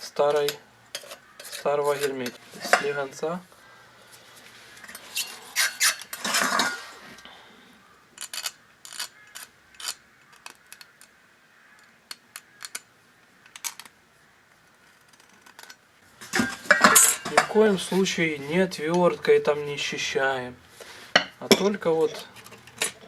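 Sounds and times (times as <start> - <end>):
knife blade scraping metal: 0.9 - 3.0, 4.9 - 7.0.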